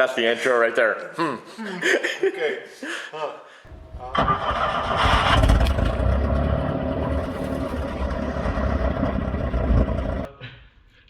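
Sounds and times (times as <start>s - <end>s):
vehicle engine running: 3.7s - 10.3s.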